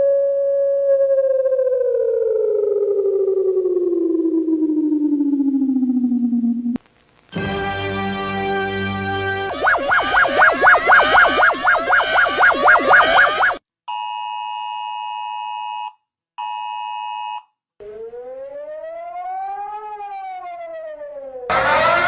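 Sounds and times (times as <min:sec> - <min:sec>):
loud rising siren: 0:00.0 - 0:06.8, 0:09.5 - 0:13.6, 0:17.8 - 0:22.0
rising and falling siren: 0:00.0 - 0:06.8, 0:09.5 - 0:13.6, 0:17.8 - 0:22.0
fast warbling alarm tone: 0:09.5 - 0:13.6, 0:17.8 - 0:22.0
two-tone alarm blasts: 0:09.5 - 0:14.2, 0:21.5 - 0:22.0.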